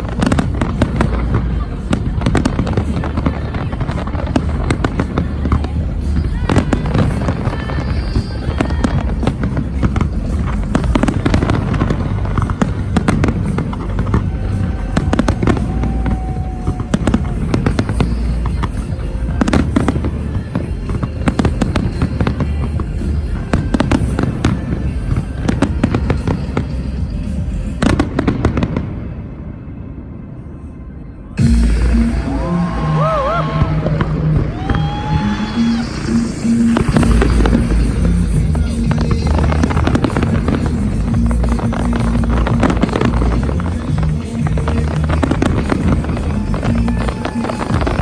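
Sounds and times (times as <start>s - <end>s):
fireworks bangs and crackles: 0.0s - 30.3s, 31.4s - 48.0s
music: 0.0s - 48.0s
deep rumble: 31.4s - 48.0s.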